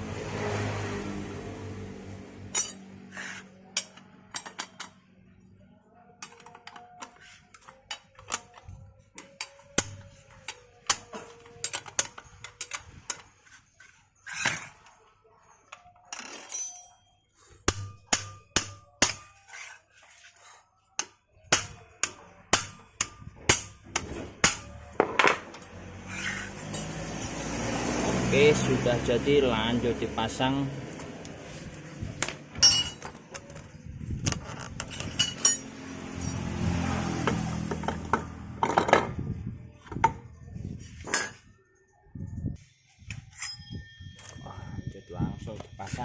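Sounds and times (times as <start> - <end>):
metallic clicks of hand tools: 6.2 - 13.3.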